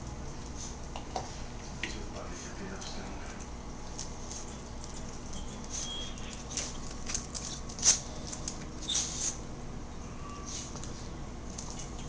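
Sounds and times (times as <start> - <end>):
puppy claws clicking on floor: 2.8 - 9.4, 10.7 - 12.0.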